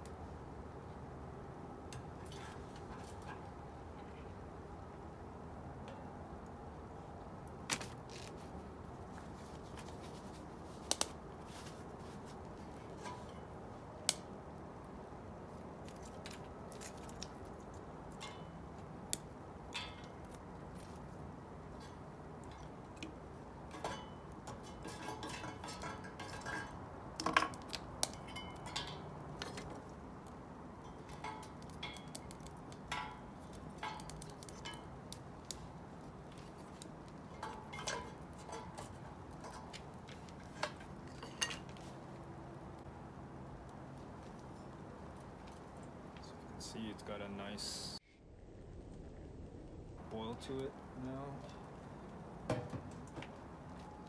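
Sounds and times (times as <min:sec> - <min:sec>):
steady low background noise: 0:00.0 - 0:54.0
metal pan and utensils clinking: 0:21.8 - 0:29.9, 0:30.8 - 0:35.0, 0:37.3 - 0:41.8.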